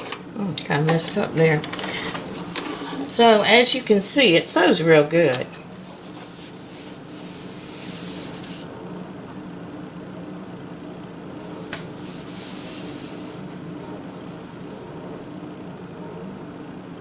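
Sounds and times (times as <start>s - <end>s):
fabric rustling: 0.0s - 8.7s, 11.4s - 14.6s.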